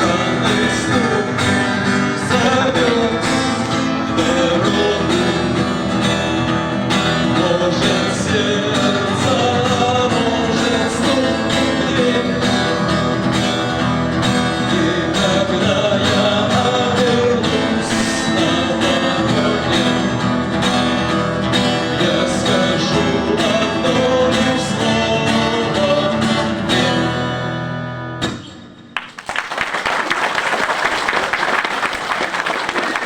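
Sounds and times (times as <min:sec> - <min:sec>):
live band playing guitars: 0:00.0 - 0:29.2
audience applause: 0:29.0 - 0:33.0.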